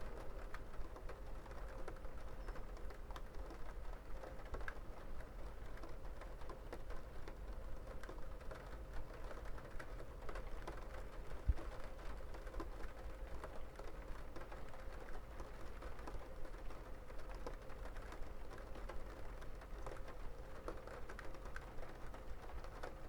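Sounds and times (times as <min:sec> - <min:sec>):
rain drops ticking: 0:00.0 - 0:23.0.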